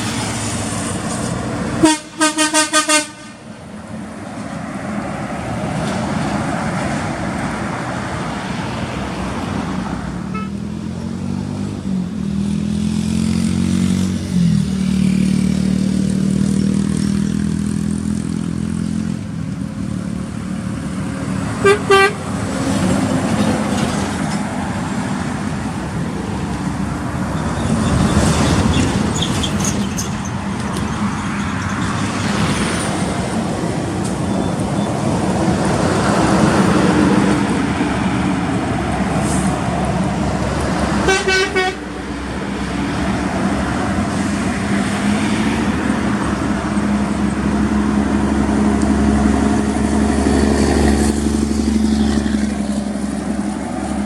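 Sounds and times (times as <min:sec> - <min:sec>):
diesel trucks passing: 0:00.0 - 0:54.0
truck horn: 0:01.8 - 0:03.6, 0:10.2 - 0:10.8, 0:21.6 - 0:22.5, 0:41.0 - 0:42.1.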